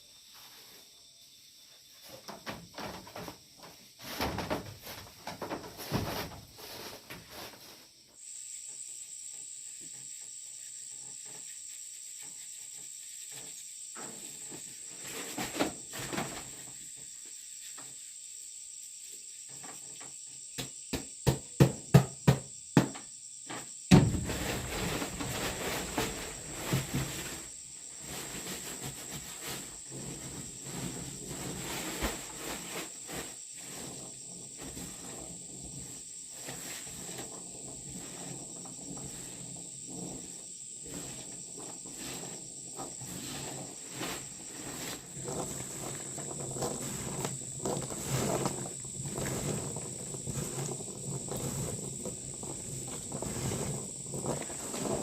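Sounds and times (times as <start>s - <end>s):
crickets trilling: 0.0s - 55.0s
sharp thuds: 23.9s - 27.2s.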